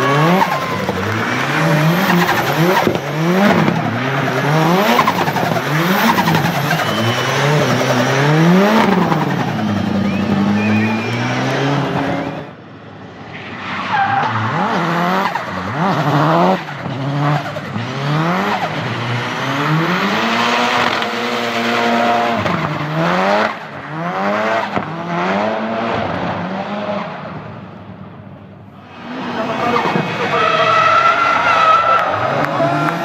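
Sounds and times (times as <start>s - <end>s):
turbocharged engine revving: 0.0s - 12.6s, 14.4s - 27.2s, 28.9s - 33.0s
tyres squealing: 29.6s - 33.0s.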